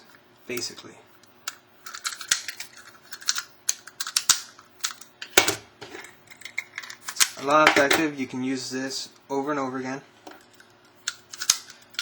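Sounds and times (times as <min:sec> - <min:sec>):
padlock clicking and rattling: 0:01.5 - 0:05.4, 0:11.1 - 0:12.0.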